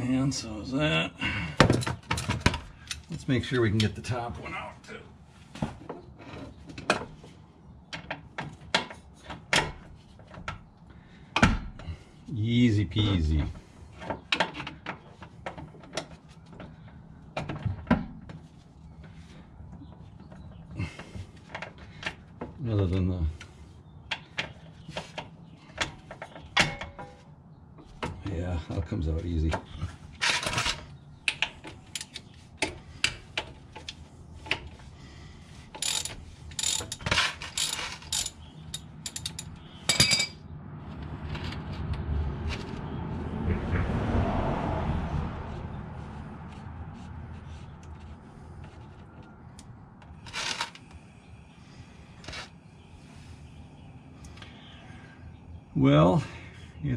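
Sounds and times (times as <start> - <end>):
hand tools clicking on metal: 35.8 - 40.0.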